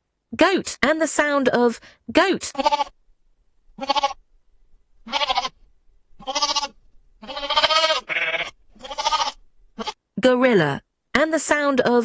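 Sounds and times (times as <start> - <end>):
goat bleating: 2.5 - 3.0, 3.8 - 4.2, 5.0 - 5.6, 6.2 - 10.0.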